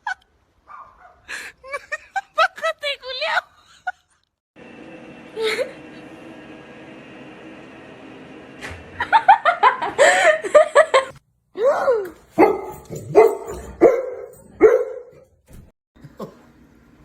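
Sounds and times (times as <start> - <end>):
dog barking: 0.7 - 1.2, 12.4 - 15.3
dog yipping: 12.4 - 15.2.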